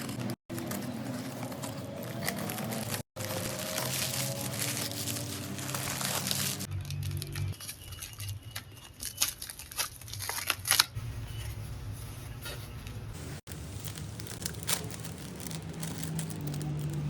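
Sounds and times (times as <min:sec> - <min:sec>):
packaging being torn open: 0:13.5 - 0:17.0.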